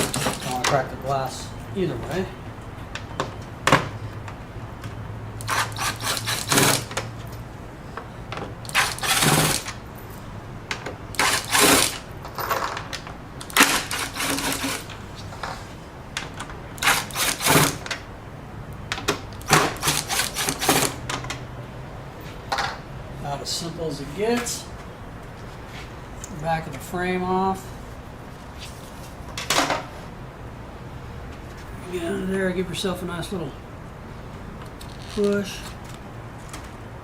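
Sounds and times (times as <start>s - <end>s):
impact driver hammering: 0.0s - 0.7s, 5.4s - 7.0s, 8.7s - 9.7s, 11.2s - 12.0s, 16.8s - 17.8s, 19.4s - 21.0s.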